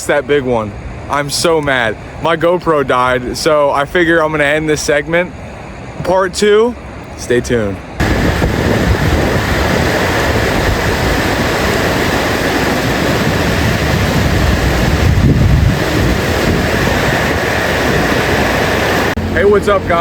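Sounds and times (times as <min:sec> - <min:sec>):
loud rushing noise: 0:07.9 - 0:20.0
low rumbling swells: 0:07.9 - 0:20.0.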